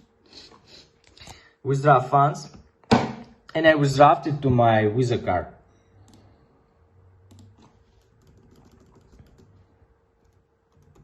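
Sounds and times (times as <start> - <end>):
typing on computer keyboard: 7.3 - 9.6, 10.2 - 11.0.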